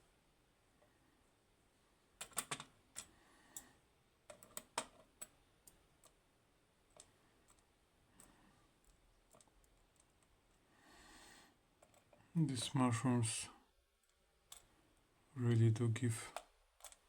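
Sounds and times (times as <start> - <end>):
metal lock parts clicking: 2.2 - 3.1, 16.3 - 17.0.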